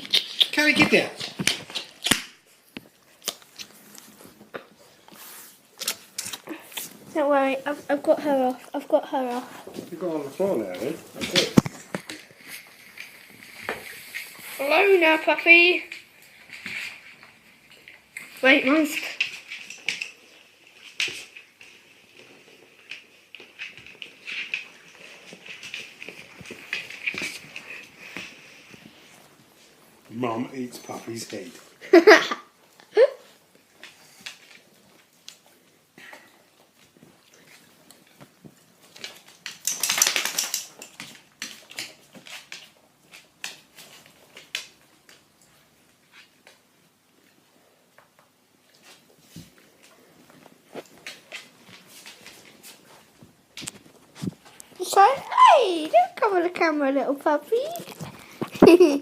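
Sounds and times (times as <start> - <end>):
dogs scuffling: 0.0 - 32.4, 36.4 - 59.0.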